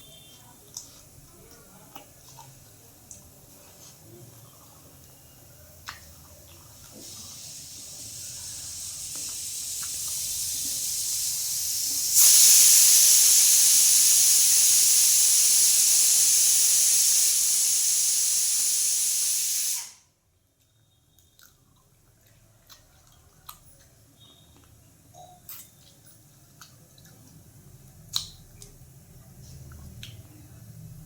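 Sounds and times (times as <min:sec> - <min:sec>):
loud steady hiss: 0:07.1 - 0:20.0.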